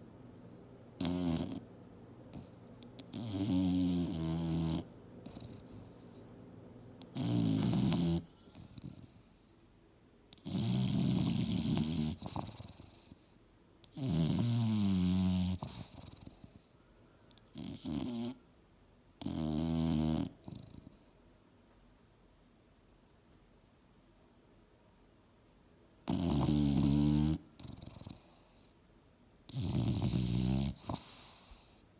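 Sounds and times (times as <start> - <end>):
dog snoring: 1.0 - 1.7, 2.3 - 6.4, 7.0 - 16.8, 17.4 - 18.4, 19.2 - 21.2, 26.0 - 28.8, 29.5 - 31.9
quiet breathing: 4.8 - 10.0, 15.6 - 17.6, 27.4 - 29.3, 30.7 - 31.9.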